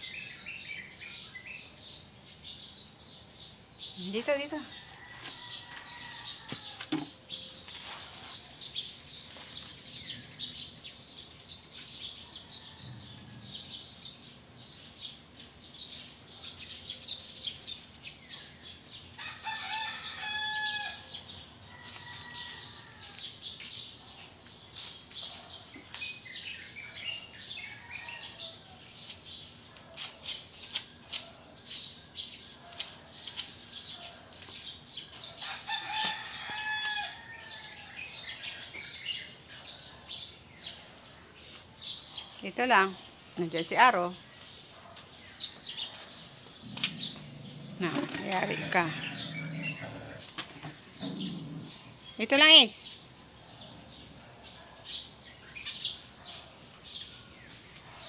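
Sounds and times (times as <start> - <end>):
rooster crowing: 4.7 - 7.0, 12.3 - 13.7, 19.2 - 23.3, 35.2 - 38.4, 46.7 - 50.2
high insect chirring: 45.4 - 54.1.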